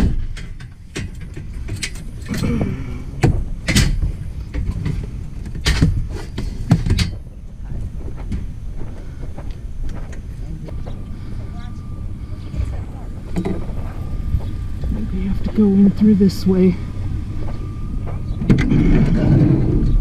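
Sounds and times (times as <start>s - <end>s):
chairs knocking and clattering: 0.0s - 7.3s
steady low rumble: 0.0s - 20.0s.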